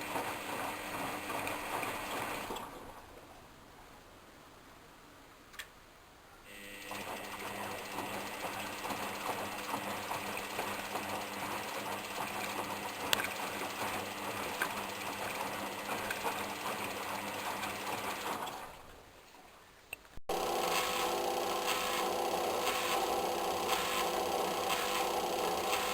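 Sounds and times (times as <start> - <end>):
washing machine hum: 0.0 - 3.4, 6.5 - 19.1, 20.3 - 25.9.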